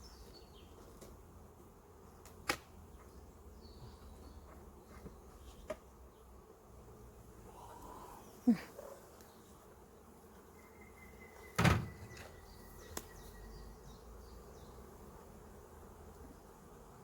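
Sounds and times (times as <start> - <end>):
bees buzzing faintly: 0.0 - 17.0
short thump: 11.6 - 12.3
small click: 12.9 - 13.2.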